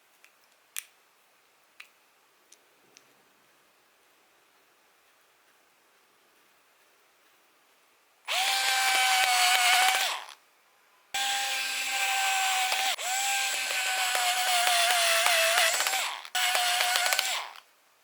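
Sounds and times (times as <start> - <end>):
small power tool motor running: 8.3 - 10.4, 11.2 - 17.6.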